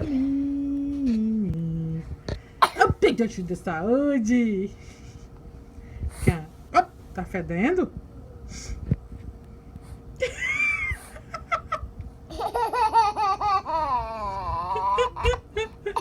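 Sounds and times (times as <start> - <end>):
high-pitched laughter: 10.2 - 16.0.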